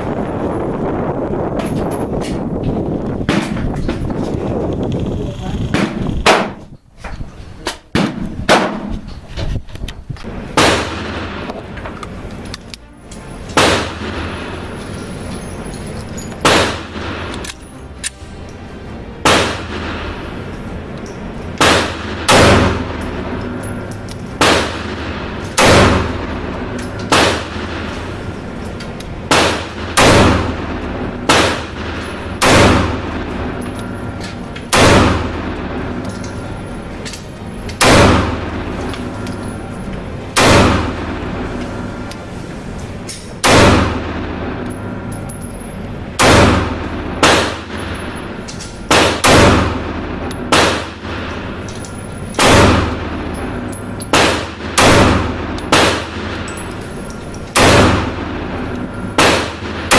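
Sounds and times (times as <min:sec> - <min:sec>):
background music: 0:10.4 - 0:45.2
gunshots with echo: 0:10.5 - 0:11.6, 0:13.6 - 0:14.8, 0:16.4 - 0:17.5, 0:19.2 - 0:20.5, 0:21.6 - 0:23.4, 0:24.4 - 0:28.2, 0:29.3 - 0:33.6, 0:34.7 - 0:36.0, 0:37.8 - 0:39.1, 0:40.4 - 0:41.5, 0:43.4 - 0:44.6, 0:46.2 - 0:48.2, 0:48.9 - 0:51.6, 0:52.4 - 0:56.7, 0:57.6 - 0:59.9.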